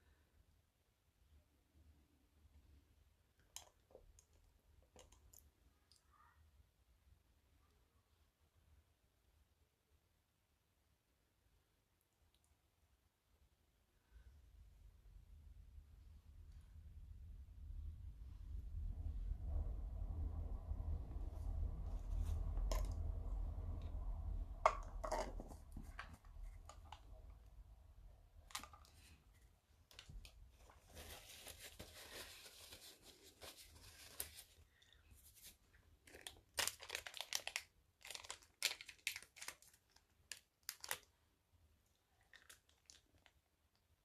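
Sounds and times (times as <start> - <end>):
low rumble: 15.4 - 28.4
packaging crinkling and tearing: 36.0 - 41.1, 42.3 - 43.3.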